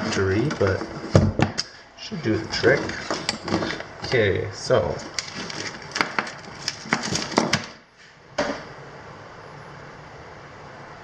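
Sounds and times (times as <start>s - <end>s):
faint steady hum: 0.0s - 11.0s
parts clicking and knocking: 4.9s - 7.8s.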